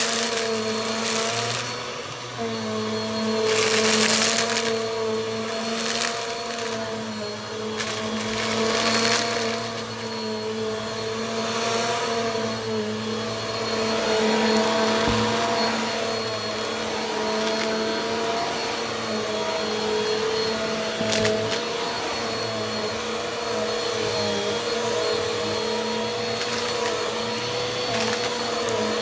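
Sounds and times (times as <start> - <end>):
vacuum cleaner running: 0.0 - 29.0.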